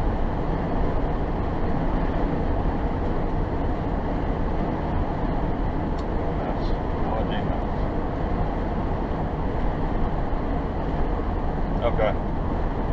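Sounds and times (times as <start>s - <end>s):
road noise inside moving car: 0.0s - 12.9s.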